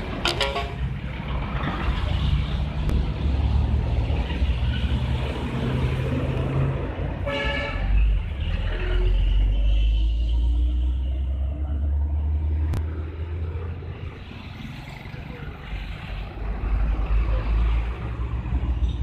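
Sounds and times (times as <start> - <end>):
passing road traffic: 0.0 - 19.0
vehicle horn tooting: 0.2 - 0.9.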